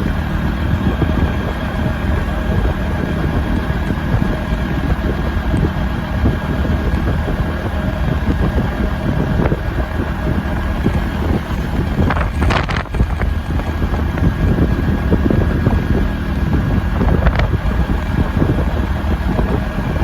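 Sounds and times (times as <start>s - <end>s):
engine hum: 0.0s - 20.0s
wind buffeting microphone: 0.0s - 20.0s.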